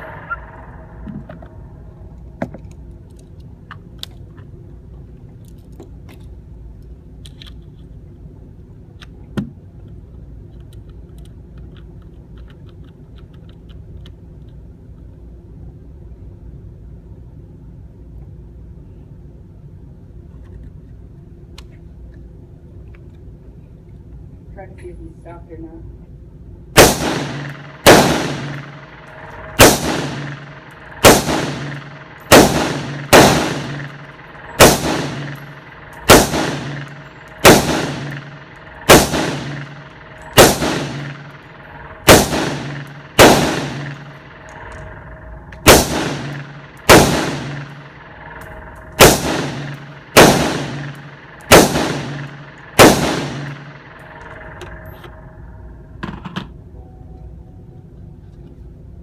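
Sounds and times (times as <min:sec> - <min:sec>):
gunshots with ringing echo: 0:00.0 - 0:02.1, 0:26.7 - 0:55.8.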